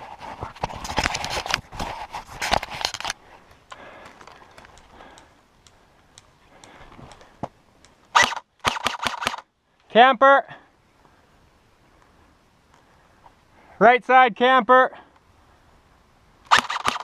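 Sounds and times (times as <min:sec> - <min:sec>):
faint clicks: 0:03.5 - 0:08.1.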